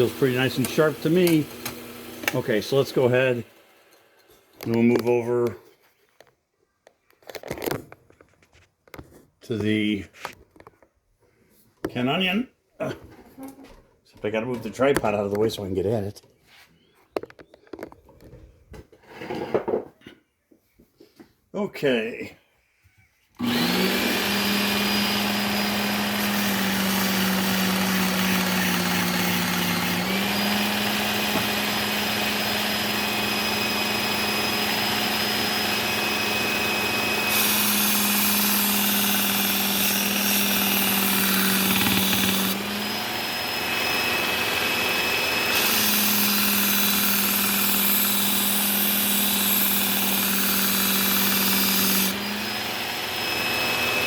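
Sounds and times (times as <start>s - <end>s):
belt sharpener motor hum: 0.0s - 4.0s, 23.4s - 54.0s
blade grinding on abrasive belt: 0.0s - 4.0s, 23.4s - 54.0s.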